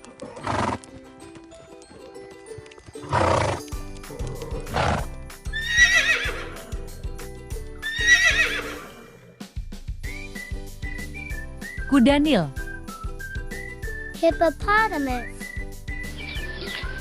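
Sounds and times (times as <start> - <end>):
light background music: 0.0 - 17.0
horse whinnying: 0.2 - 0.8, 3.0 - 6.6, 7.8 - 9.4.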